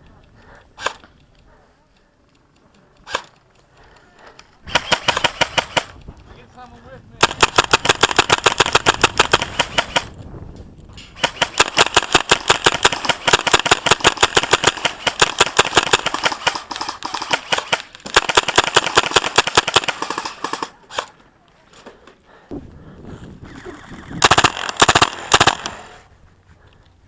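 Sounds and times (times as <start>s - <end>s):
airsoft gun firing: 4.7s - 6.0s, 7.2s - 10.1s, 11.0s - 21.2s, 24.2s - 26.0s.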